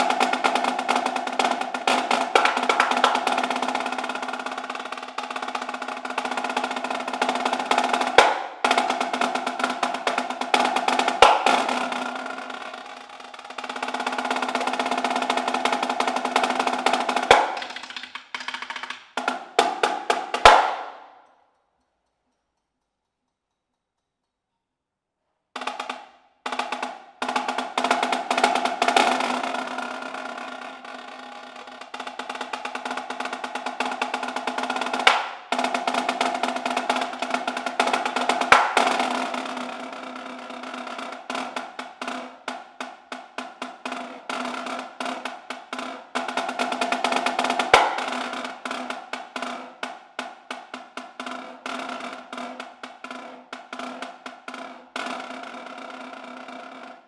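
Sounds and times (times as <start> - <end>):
marching snare drum rolls: 0.0 - 21.2, 25.6 - 57.0
loud accented drum hits: 1.9 - 3.4, 8.0 - 8.9, 10.8 - 12.0, 17.2 - 18.4, 19.2 - 21.0, 47.8 - 48.2.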